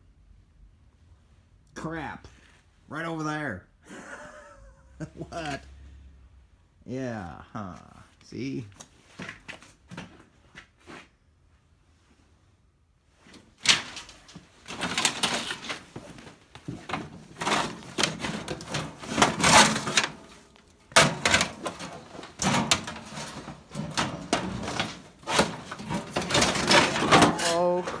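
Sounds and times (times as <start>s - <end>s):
objects clattering and scraping: 13.2s - 28.0s.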